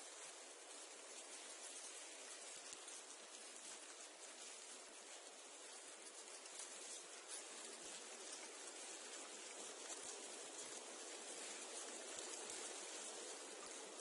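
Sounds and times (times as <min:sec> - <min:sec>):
reeds rustling in wind: 0:00.0 - 0:14.0.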